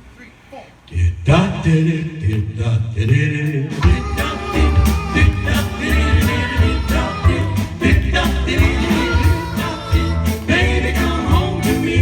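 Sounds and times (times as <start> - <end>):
singing: 0.9 - 12.0
bass: 2.3 - 12.0
drums: 3.1 - 12.0
doo-wop band playing: 3.5 - 12.0.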